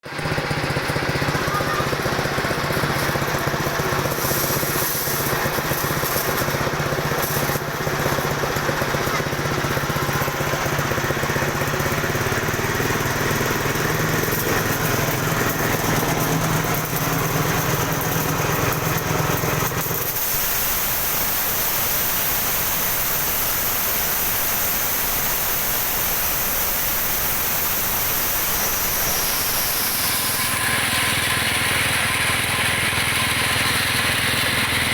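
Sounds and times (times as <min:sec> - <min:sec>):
small engine running: 0:00.0 - 0:34.9
steady hiss: 0:19.7 - 0:34.9.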